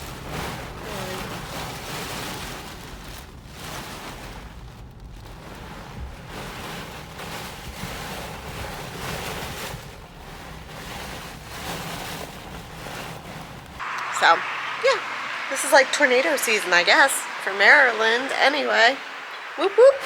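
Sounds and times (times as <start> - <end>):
wind buffeting microphone: 0.0 - 20.0
storm wind gusting: 12.3 - 20.0.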